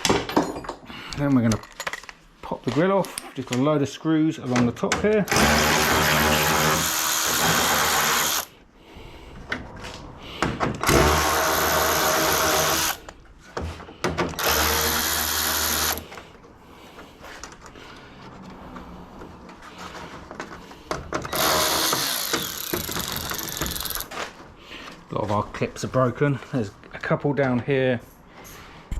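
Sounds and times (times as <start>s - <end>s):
cordless drill whirring: 5.3s - 8.5s, 10.8s - 13.1s, 14.4s - 16.1s, 21.3s - 24.1s.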